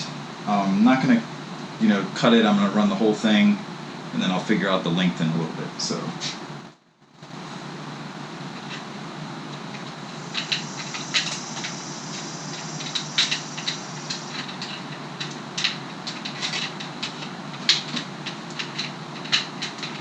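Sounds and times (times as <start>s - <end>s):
cable scraping hiss: 8.5s - 20.0s
cable clicking against bike frame: 9.5s - 20.0s.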